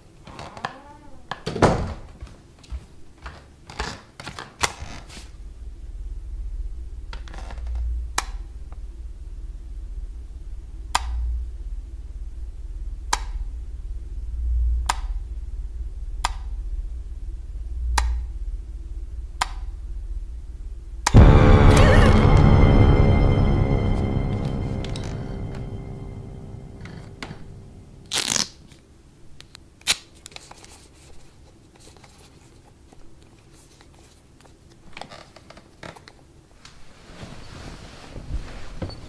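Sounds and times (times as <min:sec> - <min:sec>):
low rumbling drone: 0:05.3 - 0:28.4.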